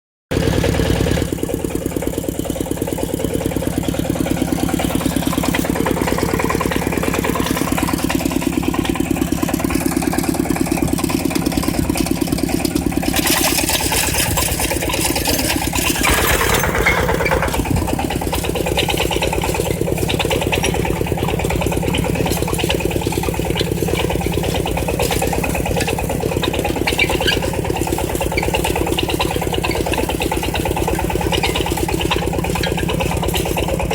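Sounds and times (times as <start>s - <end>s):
tractor engine chugging: 0.3s - 33.9s.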